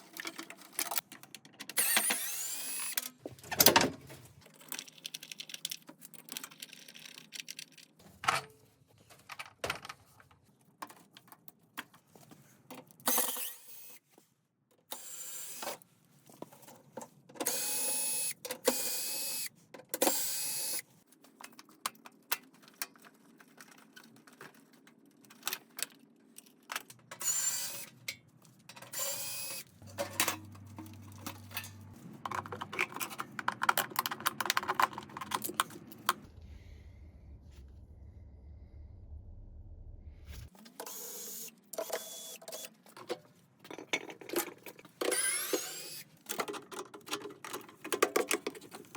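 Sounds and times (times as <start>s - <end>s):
small electric motor running: 1.8s - 3.0s, 17.5s - 20.8s, 27.2s - 27.9s, 29.0s - 29.7s, 45.1s - 46.0s
tools knocking on metal and plastic: 32.2s - 36.2s.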